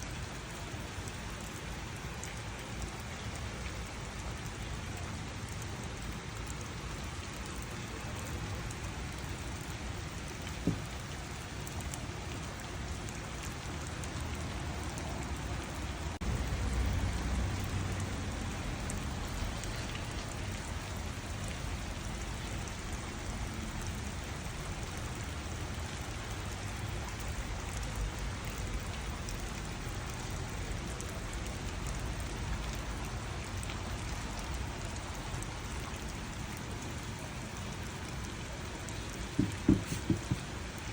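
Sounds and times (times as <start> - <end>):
rain pattering: 0.0 - 40.9.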